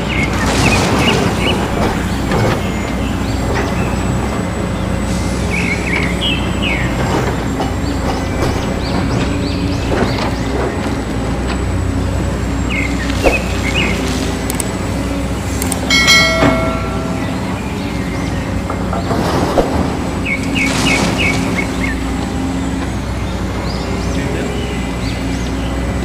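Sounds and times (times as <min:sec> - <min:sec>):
birds chirping: 0:00.0 - 0:26.0
low motor hum: 0:01.2 - 0:26.0
clicks: 0:15.6 - 0:15.9
short ringing tone: 0:15.9 - 0:17.8.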